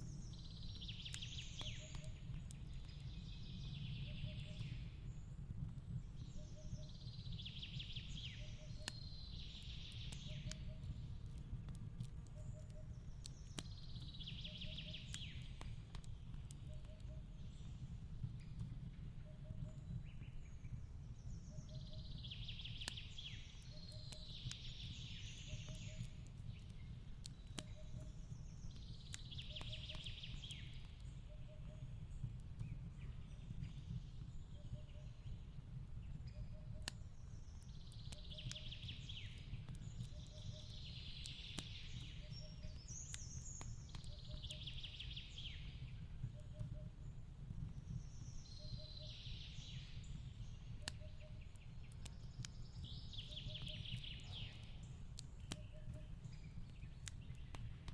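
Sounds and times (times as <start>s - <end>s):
fireplace crackling and popping: 0.0s - 57.9s
forest bird singing: 0.0s - 57.9s.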